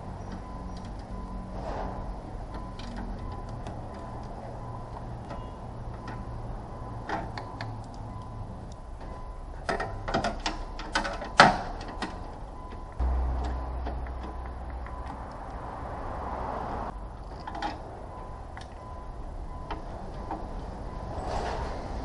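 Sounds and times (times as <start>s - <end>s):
clicks and knocks: 9.0s - 15.6s
steady low hum: 11.7s - 22.0s.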